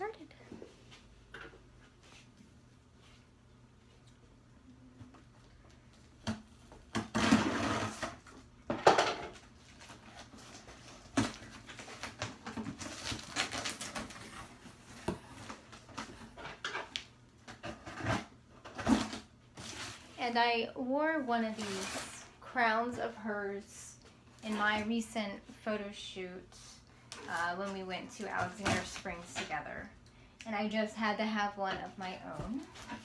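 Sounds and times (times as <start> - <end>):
packaging rustling and crinkling: 9.3 - 16.6.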